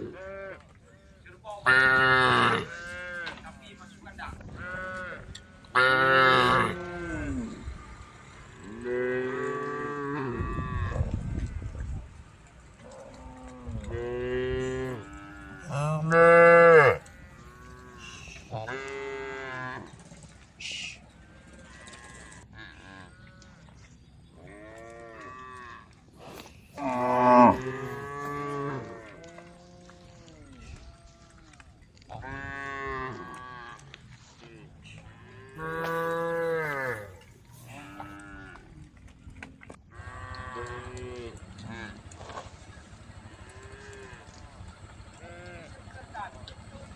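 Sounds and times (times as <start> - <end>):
cows mooing: 0.0 - 0.8, 1.6 - 7.8, 8.5 - 11.8, 12.8 - 23.8, 24.4 - 39.0, 39.9 - 46.3.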